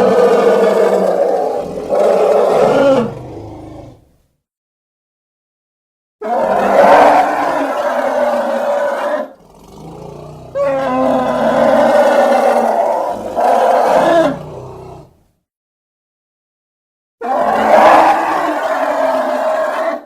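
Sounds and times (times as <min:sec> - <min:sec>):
creature roaring: 0:00.0 - 0:04.0, 0:06.2 - 0:15.2, 0:17.2 - 0:20.0
low creature growl: 0:00.0 - 0:04.0, 0:06.4 - 0:15.2.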